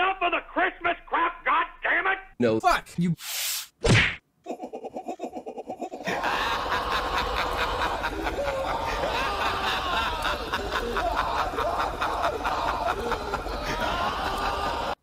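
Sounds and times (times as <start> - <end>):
jumble of laughter and noise: 4.5 - 15.0
stuttering high-pitched laugh: 4.5 - 15.0.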